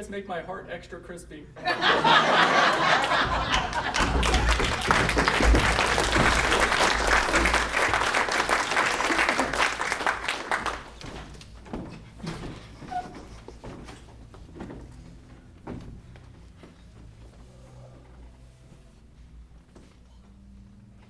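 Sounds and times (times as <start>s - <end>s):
audience applauding: 1.8s - 11.2s.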